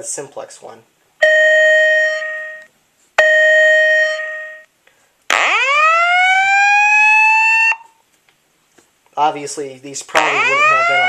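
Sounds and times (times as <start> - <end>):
fire alarm chime note: 1.2 - 4.7
rising whoop alarm tone: 5.4 - 7.8, 10.2 - 11.0.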